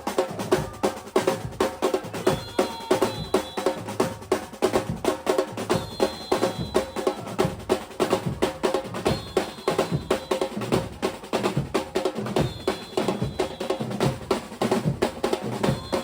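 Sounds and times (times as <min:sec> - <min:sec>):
samba drum ensemble: 0:00.0 - 0:16.0
high held tone: 0:02.2 - 0:03.9, 0:05.7 - 0:07.4, 0:09.0 - 0:10.7, 0:12.4 - 0:14.0, 0:15.6 - 0:16.0.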